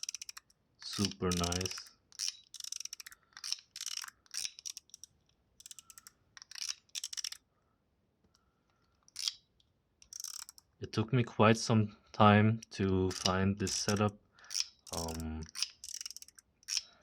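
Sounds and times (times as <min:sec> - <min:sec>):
metallic clicks of fidget slider: 0:00.0 - 0:07.4, 0:09.0 - 0:09.4, 0:10.0 - 0:10.7, 0:12.6 - 0:17.0.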